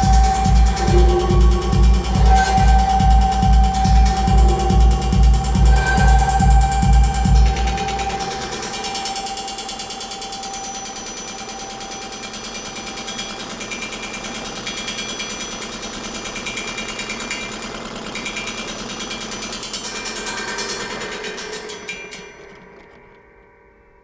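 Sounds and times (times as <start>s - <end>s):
steady tone: 0.0s - 12.9s.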